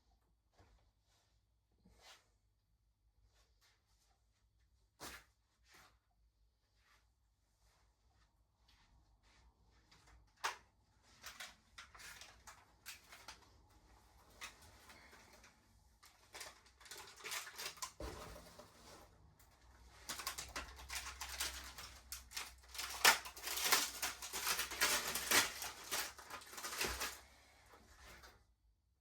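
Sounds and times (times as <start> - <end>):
clicks and rustles of handled objects: 9.7 - 28.4.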